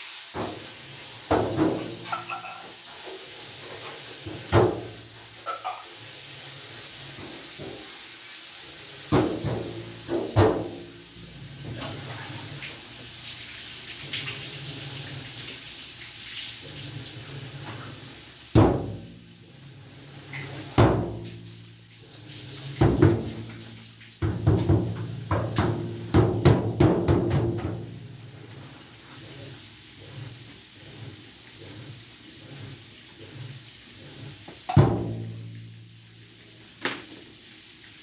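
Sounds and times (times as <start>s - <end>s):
blows on washing machine cabinet: 0.4s - 2.5s, 4.2s - 5.8s, 9.1s - 15.8s, 16.4s - 36.1s.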